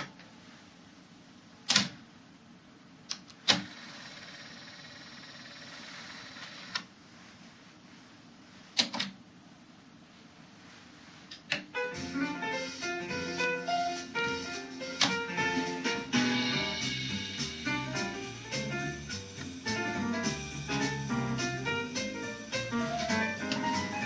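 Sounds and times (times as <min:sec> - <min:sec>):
tape hiss: 0:09.4 - 0:24.0.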